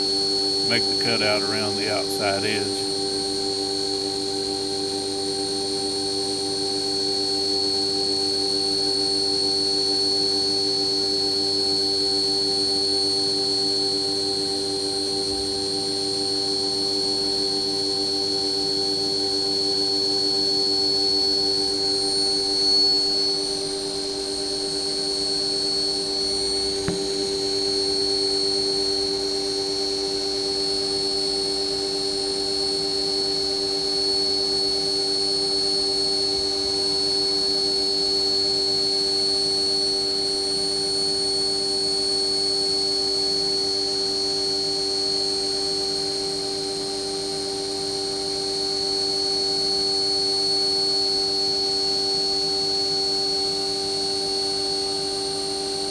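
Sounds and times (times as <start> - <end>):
milling machine whine: 21.7 - 41.3.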